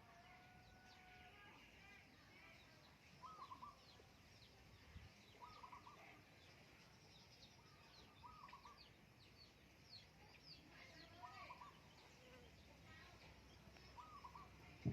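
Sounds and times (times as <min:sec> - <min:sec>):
birds chirping: 0:00.0 - 0:14.9
low clear bird call: 0:03.2 - 0:04.1, 0:05.2 - 0:06.2, 0:07.6 - 0:09.0, 0:13.6 - 0:14.9.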